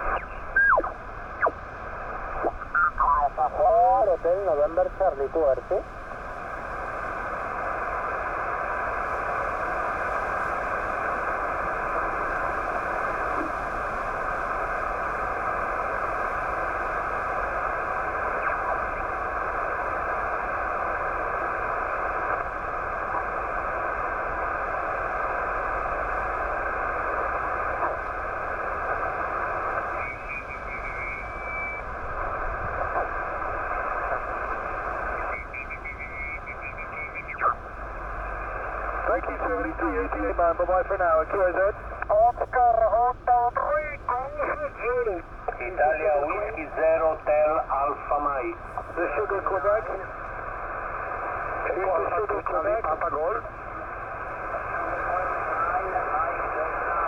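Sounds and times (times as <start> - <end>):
shortwave radio static: 0.0 - 57.0.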